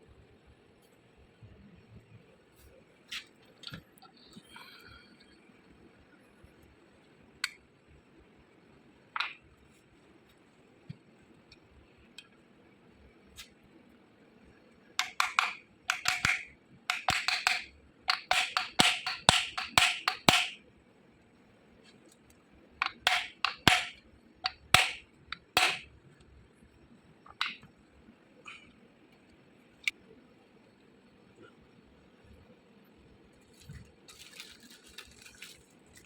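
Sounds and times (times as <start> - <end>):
tool tapping on metal parts: 15.0 - 20.6, 22.8 - 25.9.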